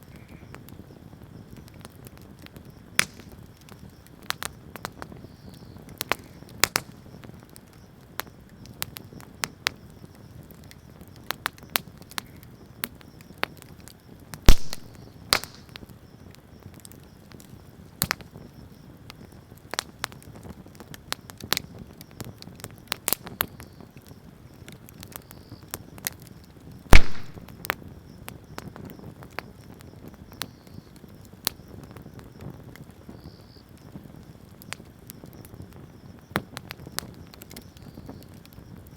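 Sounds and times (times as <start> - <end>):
loud fire pops: 0.0 - 38.9
wood fire crackling: 0.0 - 38.9.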